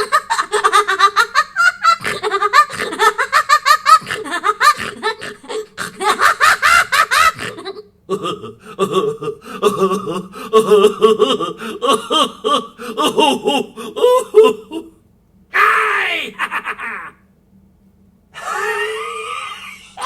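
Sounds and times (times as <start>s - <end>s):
person laughing hard: 0.0s - 15.0s, 16.0s - 17.2s, 18.4s - 20.0s
voice sound: 15.5s - 17.3s.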